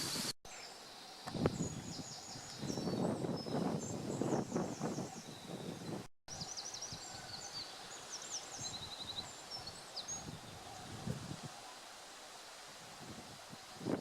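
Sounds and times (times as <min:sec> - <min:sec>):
birds chirping and trilling: 0:00.5 - 0:10.9.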